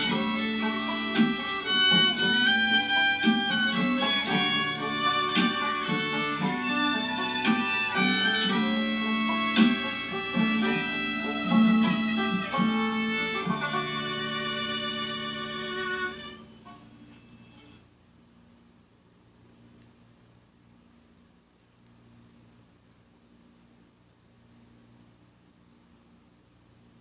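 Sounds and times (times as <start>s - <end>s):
string instruments: 0.0s - 17.8s.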